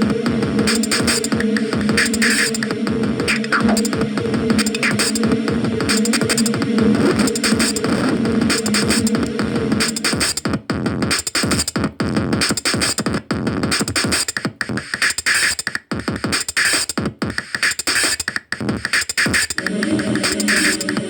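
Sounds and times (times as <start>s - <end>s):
electronic music: 0.0s - 10.6s, 19.6s - 21.0s.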